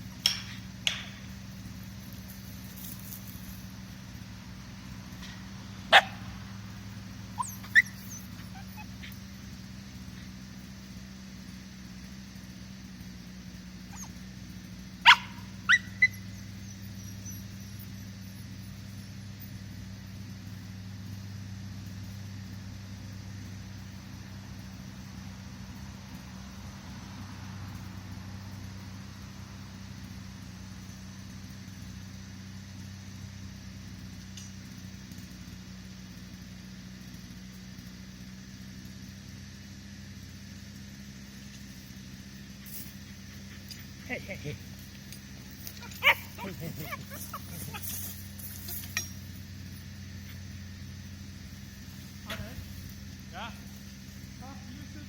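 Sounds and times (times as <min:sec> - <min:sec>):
engine idling: 0:00.0 - 0:55.0
steady low hum: 0:00.0 - 0:55.0
dog barking: 0:05.9 - 0:06.3, 0:15.0 - 0:16.3, 0:45.6 - 0:48.8, 0:52.2 - 0:52.6.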